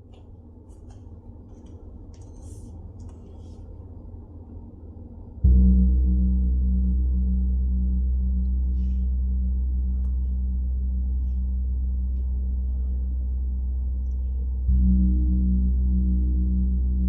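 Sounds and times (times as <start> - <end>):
deep gong ringing: 5.4 - 13.8, 14.6 - 17.0.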